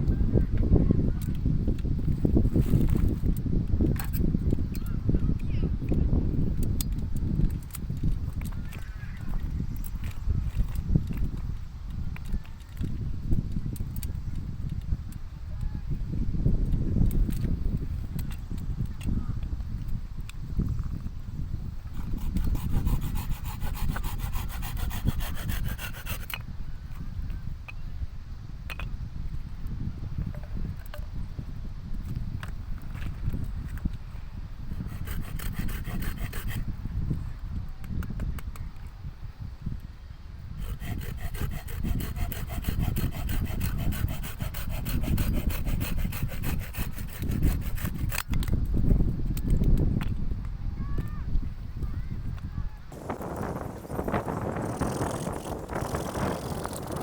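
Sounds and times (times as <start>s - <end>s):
rapid scraping on wood: 21.9s - 26.4s, 34.7s - 36.6s, 40.6s - 48.3s, 52.9s - 57.0s
wood being sawn: 21.9s - 26.4s, 34.7s - 36.6s, 40.6s - 48.3s, 52.9s - 57.0s.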